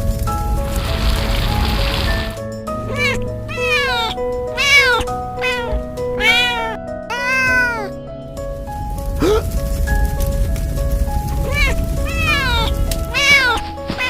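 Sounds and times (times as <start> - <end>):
background music with held notes: 0.0 - 14.0
kitten meowing: 2.8 - 8.0, 11.4 - 14.0.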